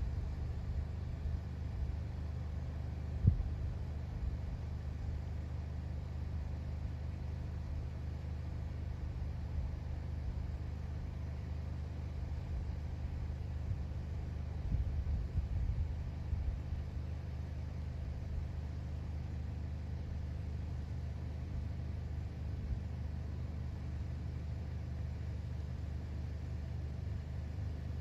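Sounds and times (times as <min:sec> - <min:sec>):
steady low rumble: 0:00.0 - 0:05.4, 0:12.2 - 0:17.1.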